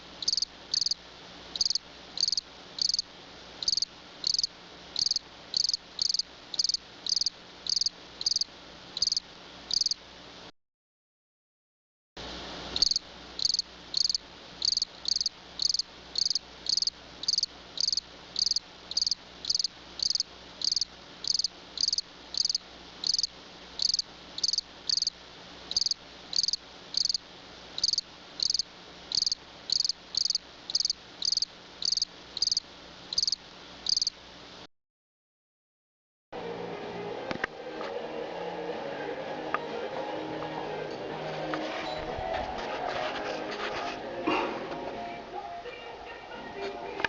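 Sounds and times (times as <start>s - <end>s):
faint low hum: 0.0s - 10.5s, 12.2s - 34.7s
cricket chirping: 0.2s - 1.0s, 1.6s - 10.0s, 12.8s - 27.2s, 27.8s - 34.2s.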